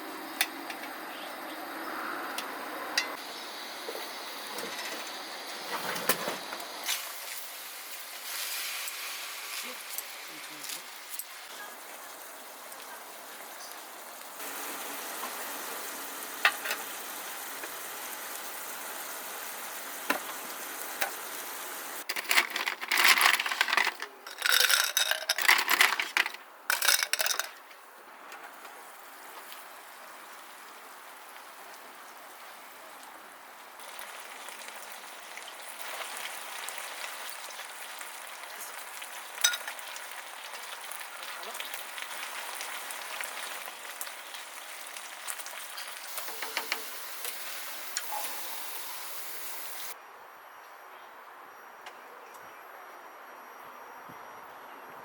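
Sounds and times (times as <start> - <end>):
food sizzling in a pan: 3.1 - 22.1, 28.8 - 50.0
utensils clicking: 22.1 - 27.5.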